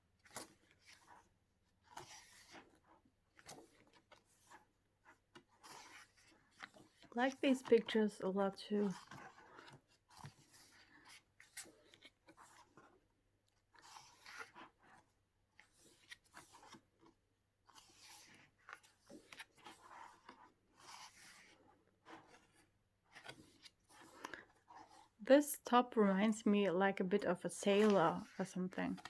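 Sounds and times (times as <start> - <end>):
pages rustling and turning: 0.2 - 8.1, 8.8 - 25.2, 27.6 - 29.0.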